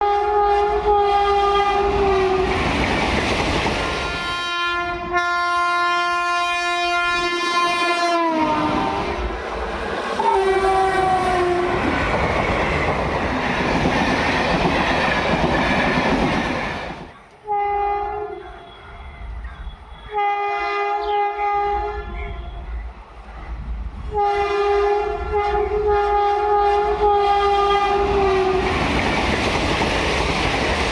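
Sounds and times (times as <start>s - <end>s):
locomotive horn blasts: 0.0s - 2.4s, 4.0s - 9.2s, 10.2s - 12.0s, 17.4s - 19.0s, 19.9s - 22.7s, 24.1s - 28.6s
train rumbling over rails: 0.0s - 30.9s.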